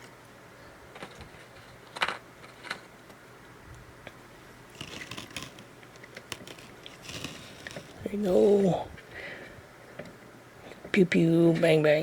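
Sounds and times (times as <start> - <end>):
plastic toy clicks and rattles: 4.8 - 8.0.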